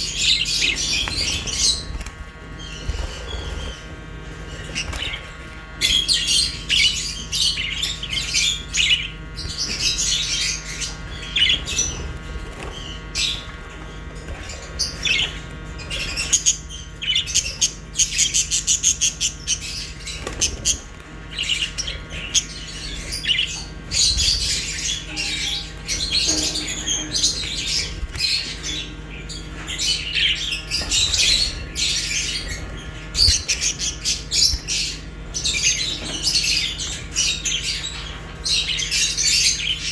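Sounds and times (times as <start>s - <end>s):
birds chirping and squawking: 0.0s - 39.9s
steady low hum: 0.0s - 39.9s
bird trill: 14.2s - 39.9s.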